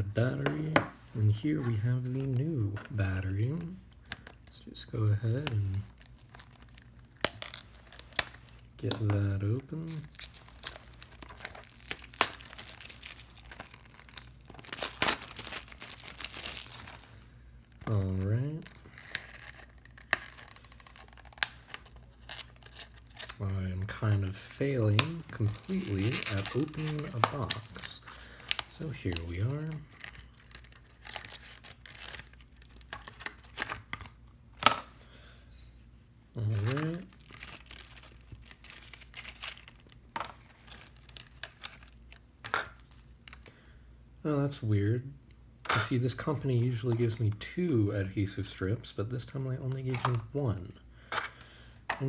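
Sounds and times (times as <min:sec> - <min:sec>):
packaging crinkling: 0:05.2 - 0:35.0, 0:36.4 - 0:43.6
packaging snap: 0:09.9 - 0:17.1, 0:24.9 - 0:35.0.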